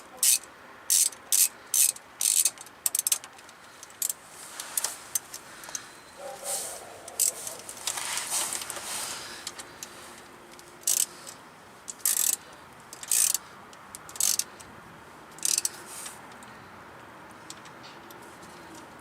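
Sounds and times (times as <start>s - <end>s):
hand ratchet clicking: 0.2s - 5.9s, 7.0s - 8.8s, 9.4s - 14.7s, 15.3s - 16.5s.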